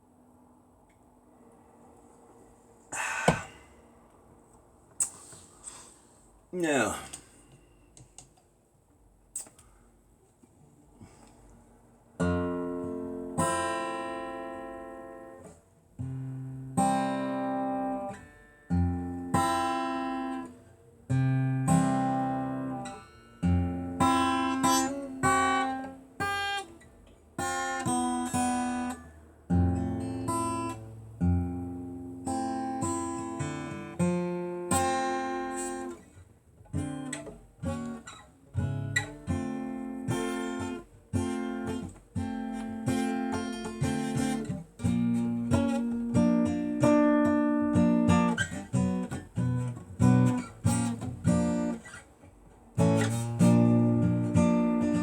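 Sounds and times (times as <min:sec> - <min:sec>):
acoustic guitar strumming chords: 0:12.2 - 0:26.8, 0:27.4 - 0:36.0, 0:36.7 - 0:52.1, 0:52.7 - 0:55.0.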